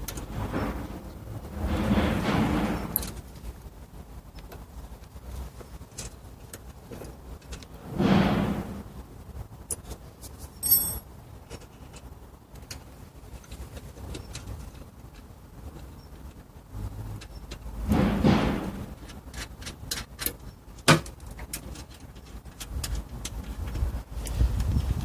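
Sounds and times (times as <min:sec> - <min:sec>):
scraping rustle: 0:00.0 - 0:03.7, 0:04.6 - 0:25.0
clicks and light knocks: 0:04.3 - 0:07.8, 0:11.4 - 0:18.0, 0:18.7 - 0:24.7.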